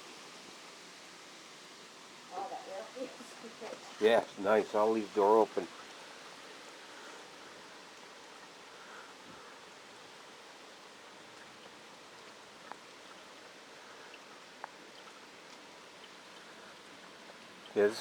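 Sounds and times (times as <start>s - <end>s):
rain and water runoff: 0.0s - 18.0s
faint ticks: 11.0s - 17.8s.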